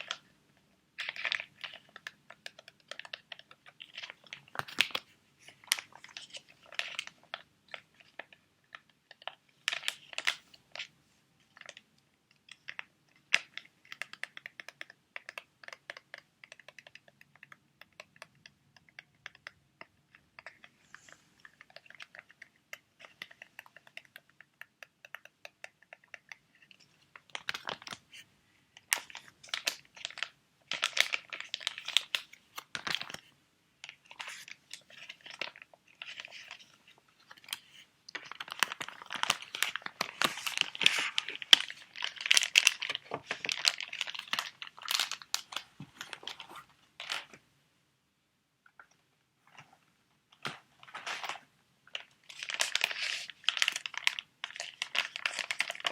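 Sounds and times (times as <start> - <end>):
crinkling of plastic packets: 1.0 - 10.9, 26.6 - 28.2, 28.8 - 47.4, 49.5 - 55.9.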